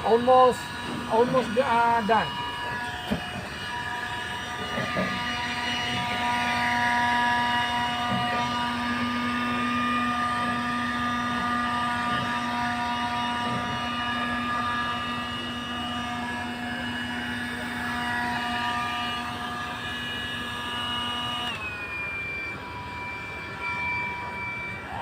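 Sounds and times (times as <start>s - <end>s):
engine running steadily: 0.0s - 25.0s
whining tones: 0.0s - 25.0s.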